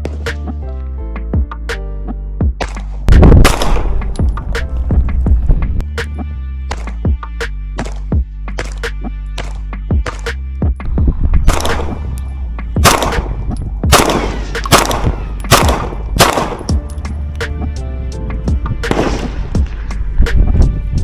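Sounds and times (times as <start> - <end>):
background music: 0.0 - 21.0
pistol shots with echo: 3.4 - 4.2, 11.5 - 12.0, 12.8 - 16.8, 18.9 - 19.4.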